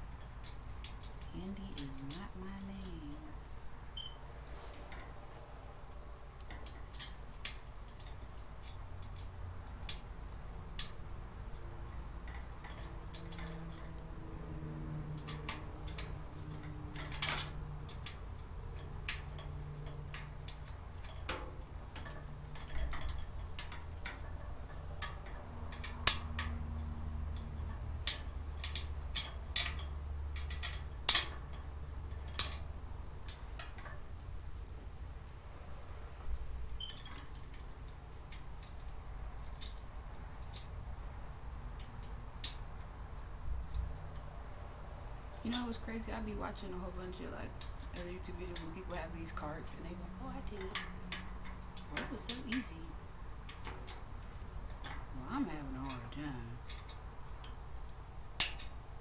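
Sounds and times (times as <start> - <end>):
hard parts clicking and clinking: 6.3 - 14.4, 15.0 - 35.5, 43.7 - 59.0.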